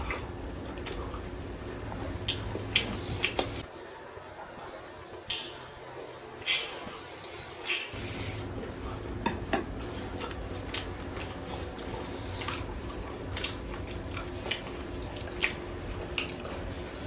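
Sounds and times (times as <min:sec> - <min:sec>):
food and bones clicking on dishes: 0:09.0 - 0:17.0.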